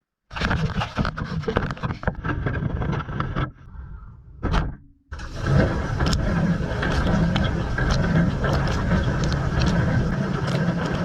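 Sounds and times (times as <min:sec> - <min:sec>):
water jets splashing and pattering: 0:05.2 - 0:11.0.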